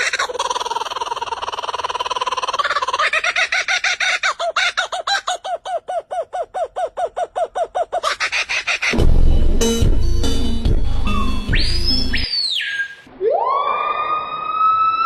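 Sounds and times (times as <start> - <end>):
music: 9.0 - 12.2
bird calling rapid notes: 11.0 - 13.1.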